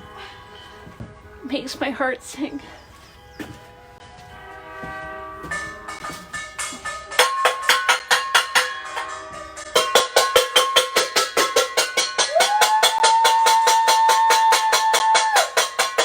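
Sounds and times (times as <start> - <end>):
horn long blast: 3.7 - 6.0
rapid metallic clanging: 4.0 - 16.0.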